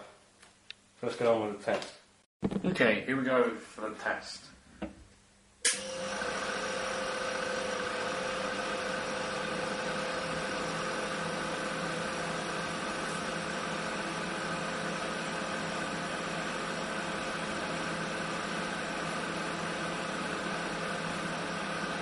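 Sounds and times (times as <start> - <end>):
refrigeration compressor humming: 5.6 - 22.0.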